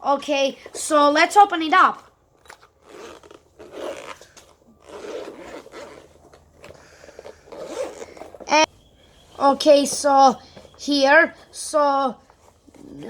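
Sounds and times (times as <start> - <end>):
bag rustling and scraping: 0.5 - 13.0
zipper pulled open: 2.0 - 9.4.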